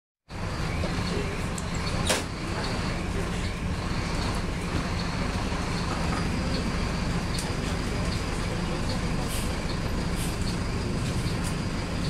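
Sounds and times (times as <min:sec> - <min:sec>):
bus diesel engine droning: 0:00.3 - 0:12.0.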